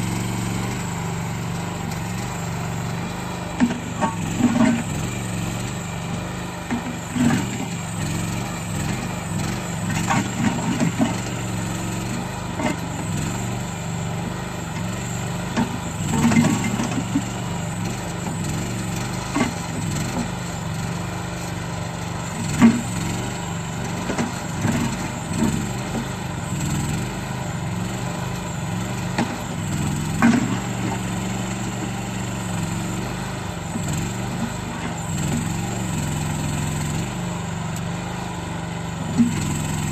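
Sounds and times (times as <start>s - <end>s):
backhoe clanking: 0.0s - 39.9s
small backhoe engine running: 0.0s - 39.9s.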